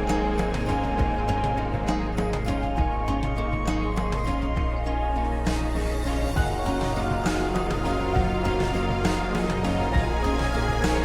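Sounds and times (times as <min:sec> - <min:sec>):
gentle new-age instrumental music: 0:00.0 - 0:11.0.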